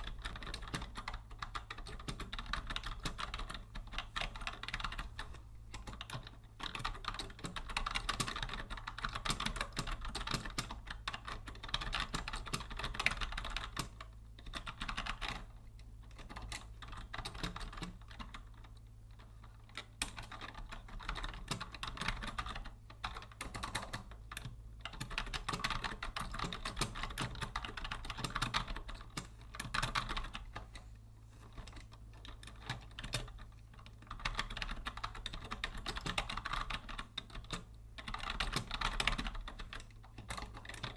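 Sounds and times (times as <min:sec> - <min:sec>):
keyboard typing clicks: 0:16.1 - 0:30.6, 0:31.5 - 0:40.9.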